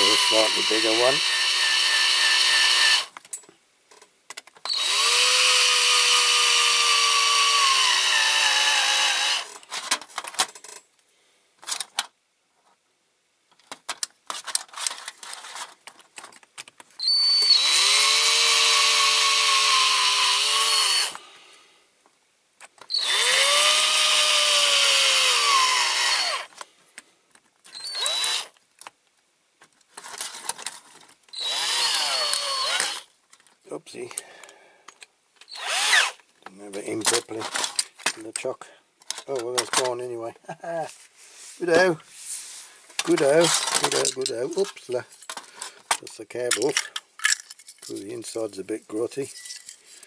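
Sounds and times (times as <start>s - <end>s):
electric drill whining: 0.0s - 3.1s, 4.7s - 9.6s, 17.0s - 21.3s, 22.9s - 26.6s, 27.7s - 28.6s, 31.3s - 33.1s, 35.5s - 36.2s.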